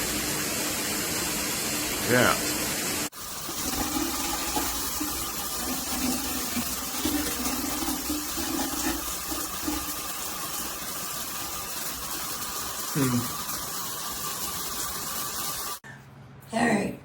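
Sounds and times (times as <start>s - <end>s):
shower water spraying: 0.0s - 15.8s.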